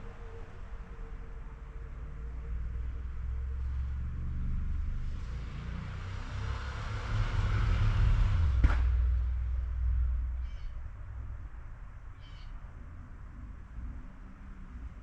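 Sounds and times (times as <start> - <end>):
low rumble: 0.0 - 15.0
vehicle tyres hissing past: 3.4 - 9.1.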